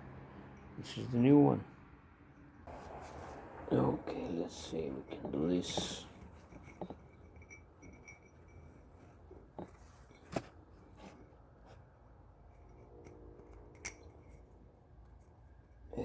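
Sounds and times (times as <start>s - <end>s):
faint clicks and taps of parts: 5.1s - 8.7s, 9.3s - 11.2s.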